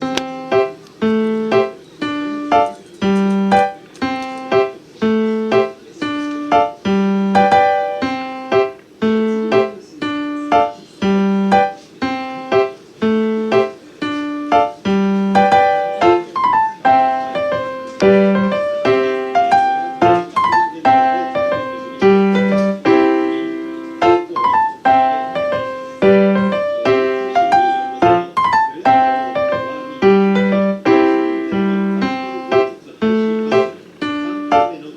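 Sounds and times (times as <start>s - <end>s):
background piano music: 0.0s - 34.9s.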